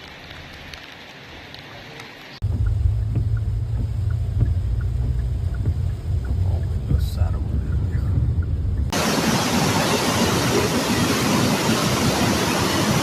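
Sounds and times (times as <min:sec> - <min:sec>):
heavy rain hissing: 0:00.0 - 0:13.0
low rumble with knocks: 0:02.4 - 0:12.1.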